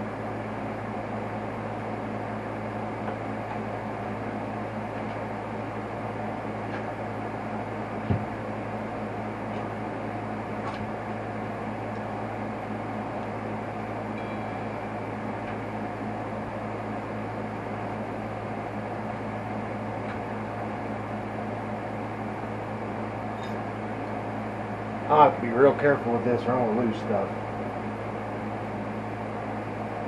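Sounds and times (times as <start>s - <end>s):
steady mechanical hum: 0.0s - 30.0s.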